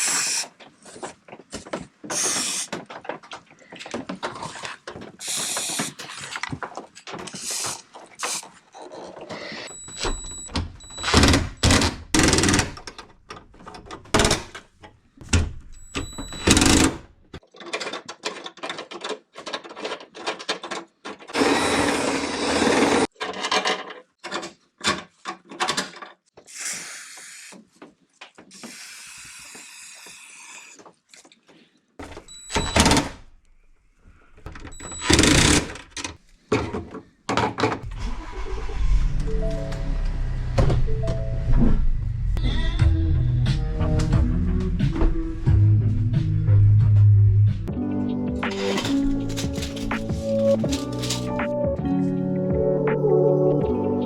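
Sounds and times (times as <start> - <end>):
power drill bursts: 21.4 - 23.1, 34.8 - 35.8
metal parts clattering: 48.5 - 51.5.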